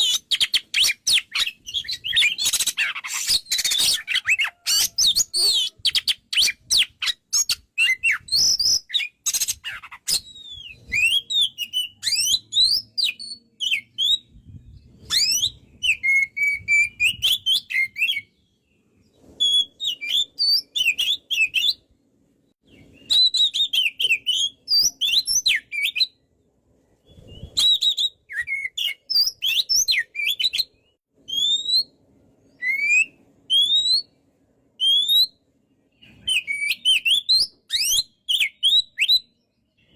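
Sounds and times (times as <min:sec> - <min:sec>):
bird singing: 0:00.0 - 0:21.8, 0:27.0 - 0:34.2.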